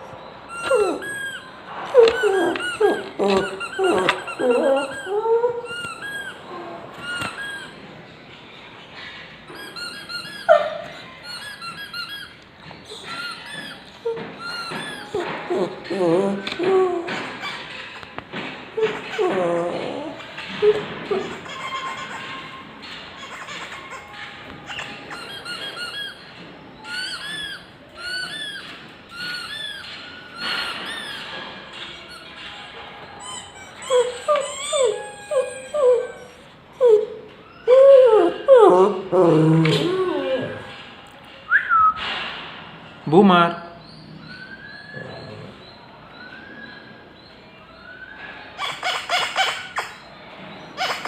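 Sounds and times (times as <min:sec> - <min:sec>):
squeaky toy squeaking: 0:00.5 - 0:07.8, 0:09.5 - 0:18.1, 0:18.8 - 0:32.4, 0:33.1 - 0:39.2, 0:48.6 - 0:50.1, 0:50.8 - 0:51.0.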